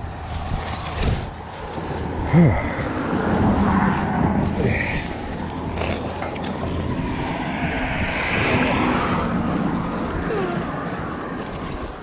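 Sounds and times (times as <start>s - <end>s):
road traffic rumbling: 0.0s - 12.0s
vehicle passing by: 0.0s - 12.0s.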